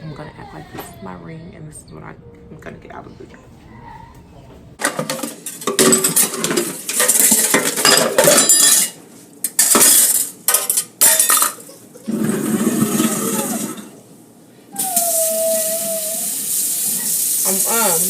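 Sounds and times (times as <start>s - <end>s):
dishes and cutlery clattering: 3.3s - 14.0s.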